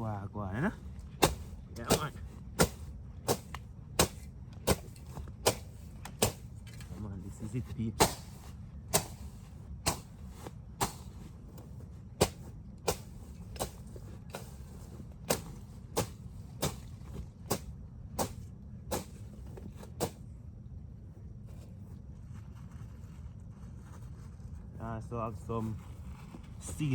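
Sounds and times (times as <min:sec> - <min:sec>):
machete chopping through brush: 0:01.0 - 0:07.1, 0:07.9 - 0:20.2.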